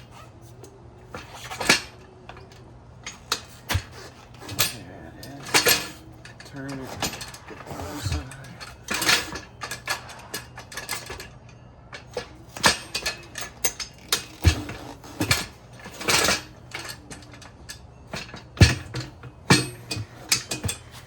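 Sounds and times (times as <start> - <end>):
metal tools clinking on wheel: 0.0 - 21.0
heavy thuds: 1.1 - 11.3, 12.0 - 17.3.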